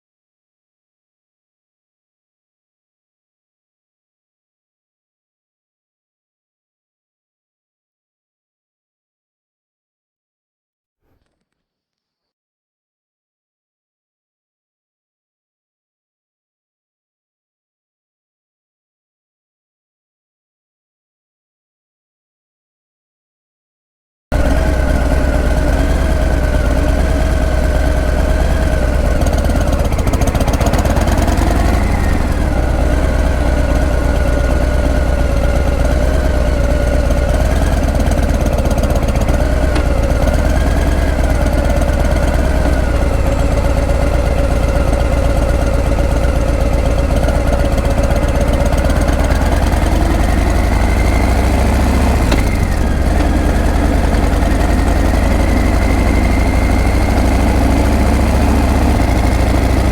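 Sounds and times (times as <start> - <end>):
motorcycle engine running loudly: 24.3 - 59.9.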